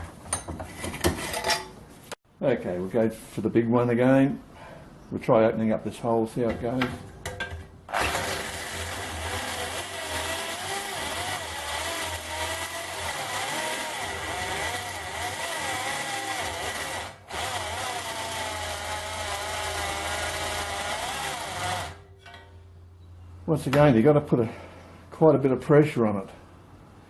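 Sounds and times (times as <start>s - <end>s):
electric drill motor whine: 7.9s - 22.0s.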